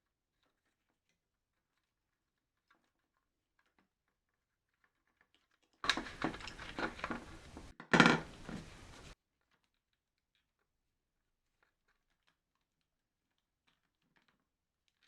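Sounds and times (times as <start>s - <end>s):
tools clicking and knocking: 5.8s - 9.2s.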